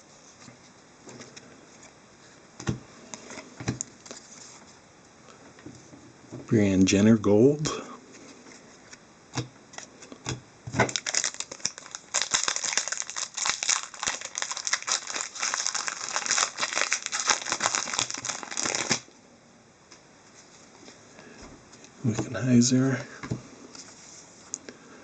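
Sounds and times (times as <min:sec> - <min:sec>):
wrapper crinkling: 0:10.8 - 0:19.1.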